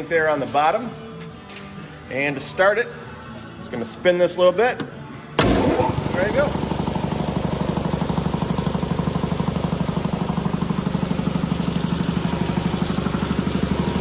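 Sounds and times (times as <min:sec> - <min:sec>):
air compressor pump pulsing: 0:05.4 - 0:14.0.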